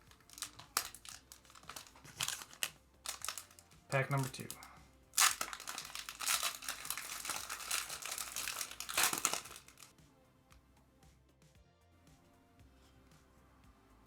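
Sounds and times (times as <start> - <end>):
foil wrapper crinkling and tearing: 0.0 - 9.9.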